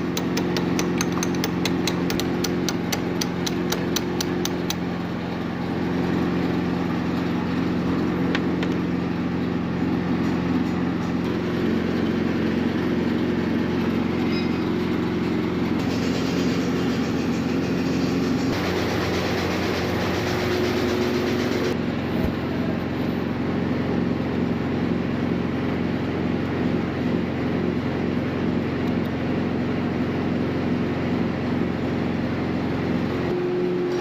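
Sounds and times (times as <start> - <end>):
sharp ticking: 0.0 - 4.8
machinery humming: 0.0 - 24.0.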